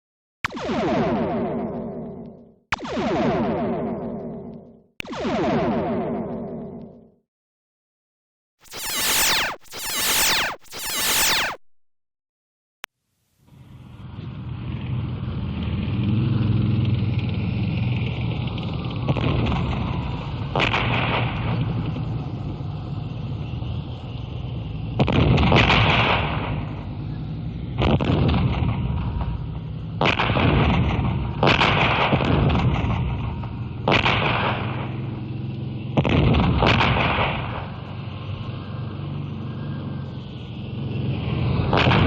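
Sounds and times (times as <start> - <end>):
tank engine rumble: 13.6 - 31.4, 32.4 - 41.9
tank cannon blasts: 18.9 - 24.1, 24.9 - 38.7, 41.5 - 42.0.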